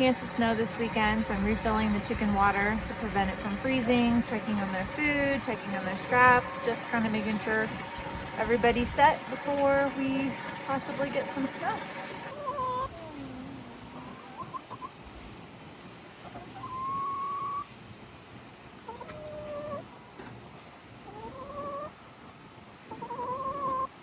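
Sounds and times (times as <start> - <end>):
hens calling: 0.0 - 15.0, 16.3 - 17.6, 21.1 - 22.1, 22.9 - 23.9.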